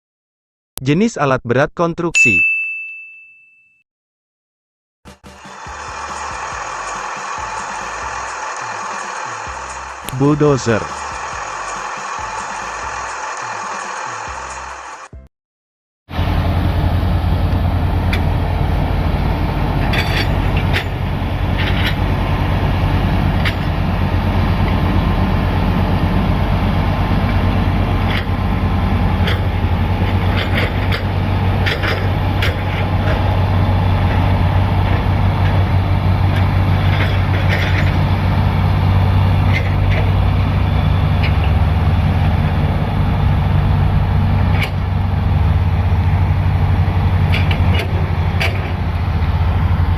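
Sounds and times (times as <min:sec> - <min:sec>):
bulldozer diesel engine running: 0:05.1 - 0:15.2, 0:16.1 - 0:49.9
short metallic clanks: 0:19.8 - 0:21.0, 0:47.3 - 0:48.8.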